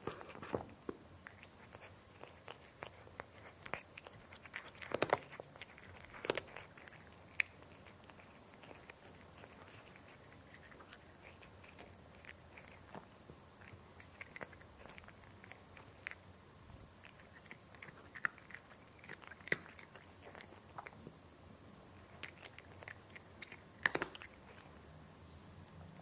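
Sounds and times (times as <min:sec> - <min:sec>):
cat crunching dry food: 0:00.0 - 0:16.2, 0:17.0 - 0:21.0, 0:22.0 - 0:24.8.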